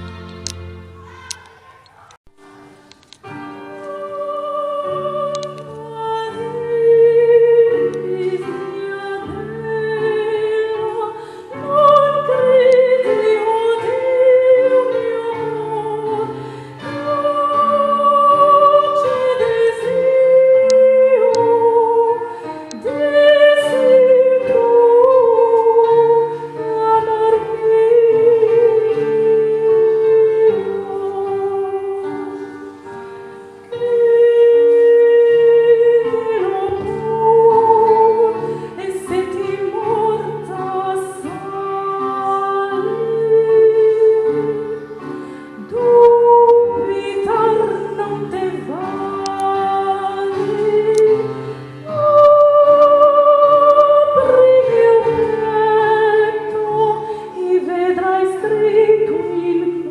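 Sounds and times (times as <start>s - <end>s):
classical solo singing with vibrato: 3.6s - 32.9s, 33.7s - 59.9s.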